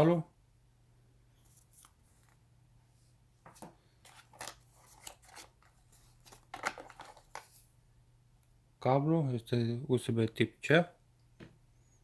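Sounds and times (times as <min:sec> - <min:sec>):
faint steady hum: 0:00.0 - 0:12.0
packaging rustling and crinkling: 0:04.0 - 0:07.7.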